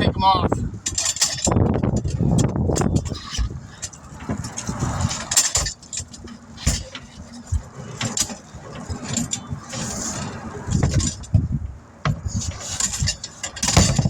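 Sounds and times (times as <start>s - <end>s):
metallic clanks and knocks: 0.8s - 14.0s.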